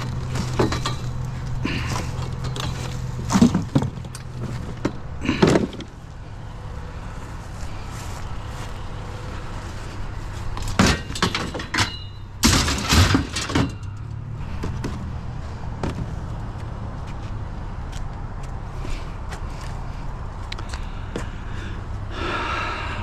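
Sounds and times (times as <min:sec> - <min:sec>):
hard metal clangs: 0:00.0 - 0:04.1, 0:10.6 - 0:14.2
scrap metal clanking and rattling: 0:00.0 - 0:06.0, 0:09.8 - 0:15.0
low engine hum: 0:00.0 - 0:23.0.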